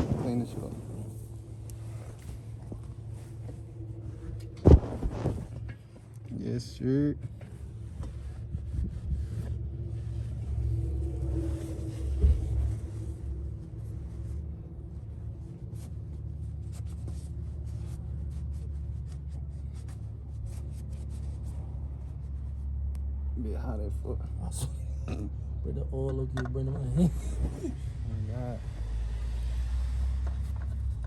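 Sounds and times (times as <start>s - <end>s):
steady low rumble: 0.0s - 31.0s.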